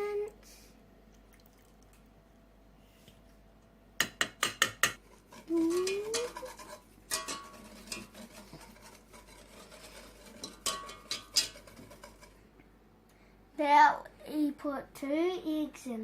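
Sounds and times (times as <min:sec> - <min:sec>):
utensil scraping mixing bowl: 0:04.9 - 0:12.5.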